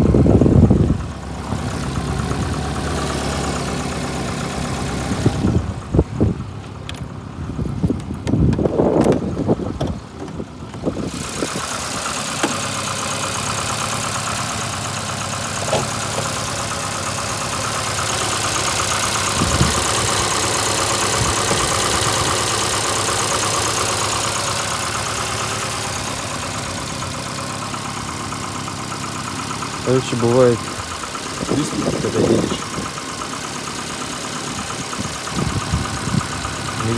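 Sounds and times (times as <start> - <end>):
car engine idling with knock: 0.0 - 36.9
handling bumps: 15.5 - 16.8.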